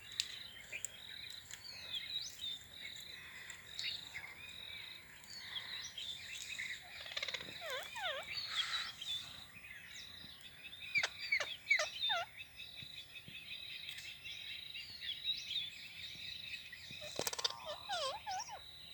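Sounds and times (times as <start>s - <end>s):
parakeets chirping and squawking: 6.8s - 9.2s, 11.0s - 12.3s, 17.0s - 18.6s.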